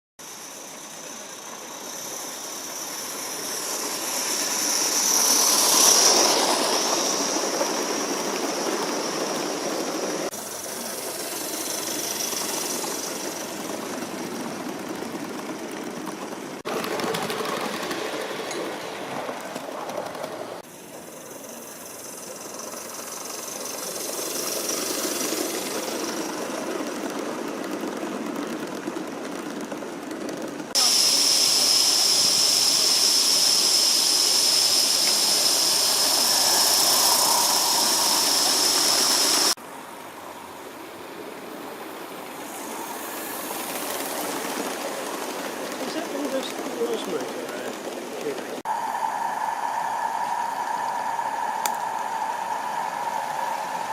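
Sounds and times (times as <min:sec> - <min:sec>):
loud hiss with high tone: 0:00.2 - 0:14.5, 0:20.6 - 0:26.8, 0:30.8 - 0:46.6, 0:48.6 - 0:53.9
model locomotives running: 0:00.2 - 0:53.9.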